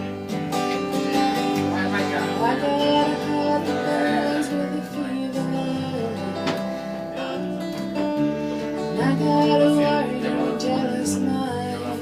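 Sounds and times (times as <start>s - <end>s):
acoustic guitar strumming: 0.0s - 12.0s
person singing: 1.6s - 7.6s, 8.6s - 12.0s.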